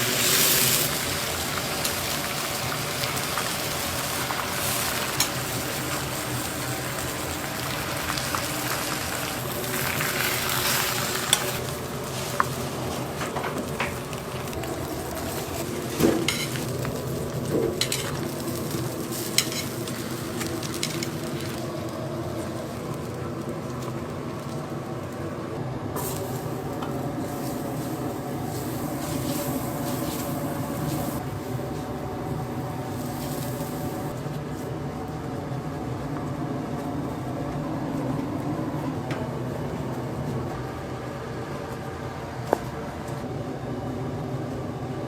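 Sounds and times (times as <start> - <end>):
hot dogs sizzling in oil: 0.0 - 25.2, 26.0 - 34.2.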